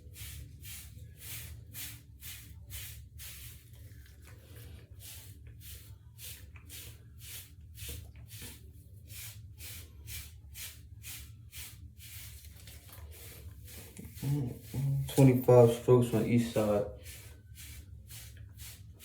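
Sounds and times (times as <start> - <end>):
brush strokes through hair: 0.0 - 19.0.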